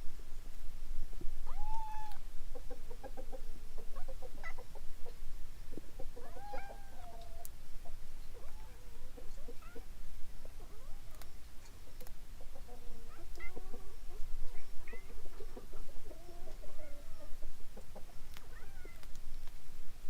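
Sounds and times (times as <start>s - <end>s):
cats meowing: 1.5s - 2.2s, 6.2s - 7.5s, 13.1s - 13.7s, 18.4s - 19.1s
chickens clucking: 1.6s - 11.8s, 12.4s - 19.1s.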